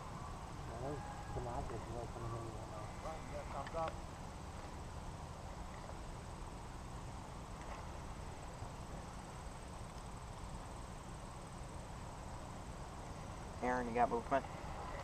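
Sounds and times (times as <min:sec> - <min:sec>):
faint ticks: 0:09.8 - 0:10.5.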